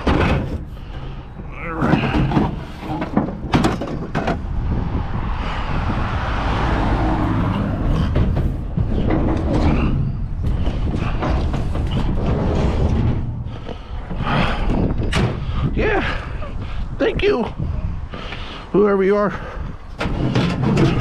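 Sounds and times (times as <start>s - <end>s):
vehicle engine rumbling: 0.0s - 21.0s
rushing noise: 4.1s - 15.7s.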